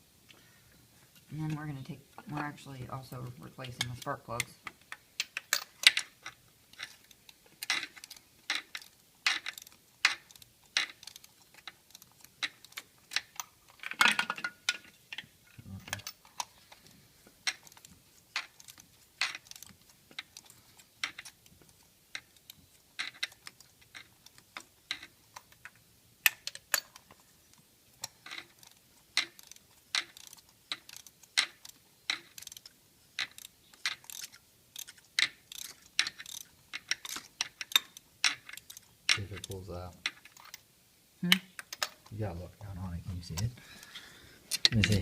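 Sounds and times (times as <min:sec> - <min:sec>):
ratchet wrench clicking: 0:28.0 - 0:39.5.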